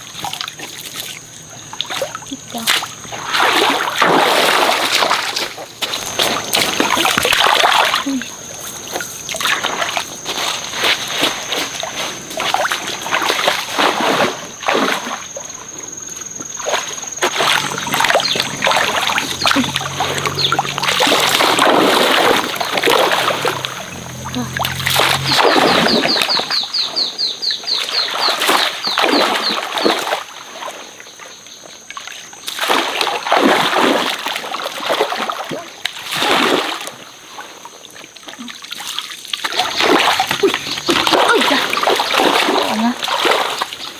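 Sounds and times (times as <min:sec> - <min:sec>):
water splashing and sloshing: 0:00.0 - 0:43.9.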